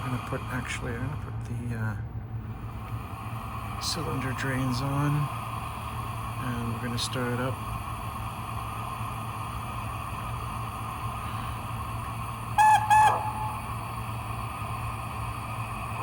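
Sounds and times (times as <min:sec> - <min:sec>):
steady hum: 0:00.0 - 0:16.0
model locomotive whistle toots: 0:12.4 - 0:14.2.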